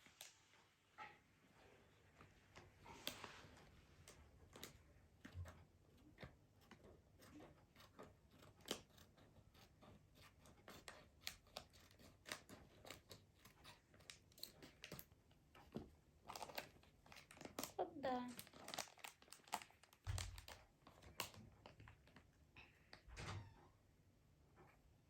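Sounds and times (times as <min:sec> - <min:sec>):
plastic packaging crinkling: 0:16.2 - 0:22.2.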